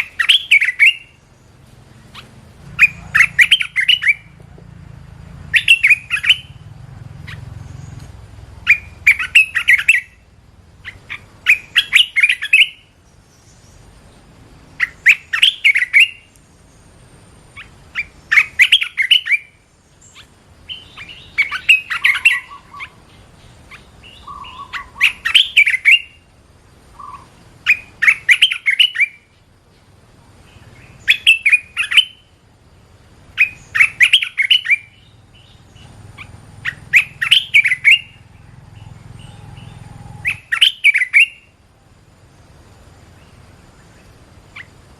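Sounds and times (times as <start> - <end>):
bird singing warbled notes: 0.0 - 1.3, 2.1 - 4.4, 5.5 - 10.2, 10.8 - 13.0, 17.4 - 26.3, 33.4 - 41.5.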